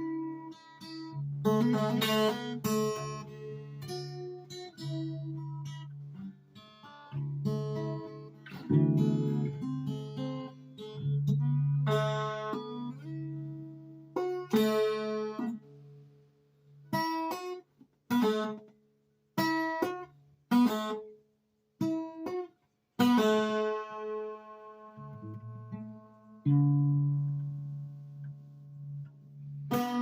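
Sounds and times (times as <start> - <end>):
acoustic guitar chords strummed: 7.2 - 15.6.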